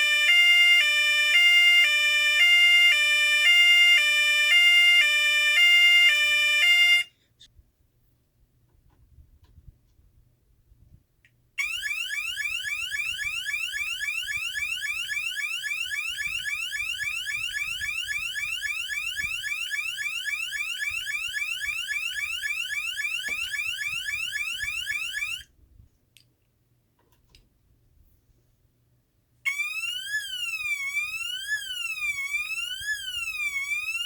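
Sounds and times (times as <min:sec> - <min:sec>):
electronic alarm rising sweeps: 0:11.6 - 0:25.4, 0:29.5 - 0:34.0.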